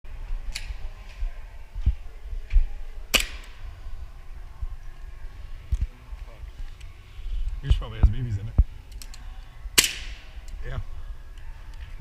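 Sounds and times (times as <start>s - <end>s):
steady low rumble: 0.1s - 12.0s
sharp snap: 3.1s - 3.6s, 9.8s - 10.2s.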